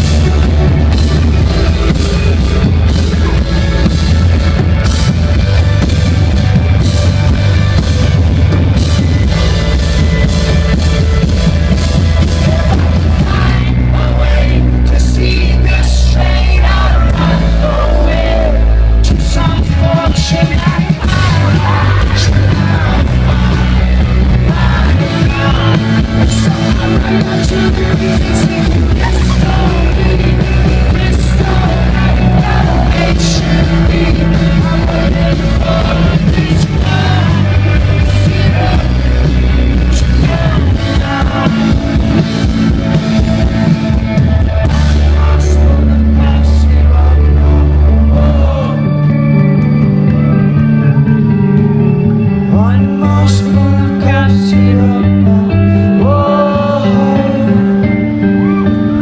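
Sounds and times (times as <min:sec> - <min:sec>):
rock band playing live: 0:00.0 - 0:59.0
person singing: 0:11.7 - 0:42.5, 0:44.4 - 0:49.4, 0:50.9 - 0:59.0.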